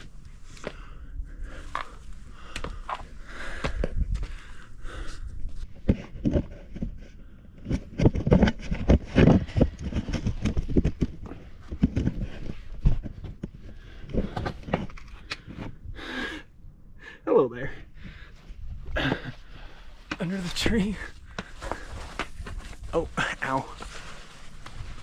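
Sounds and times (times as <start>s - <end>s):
boots scuffing on rock: 21.0s - 25.0s.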